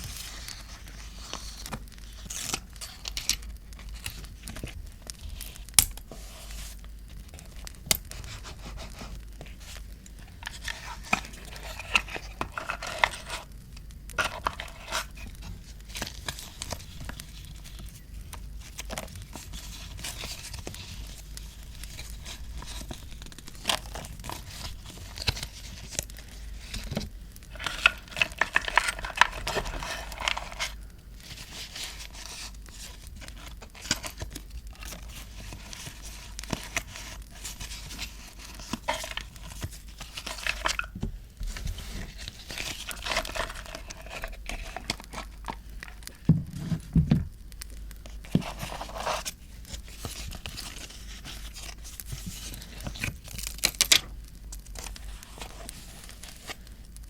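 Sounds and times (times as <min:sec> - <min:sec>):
paper rustling and tearing: 0:08.1 - 0:13.5, 0:14.1 - 0:46.9, 0:48.0 - 0:54.1.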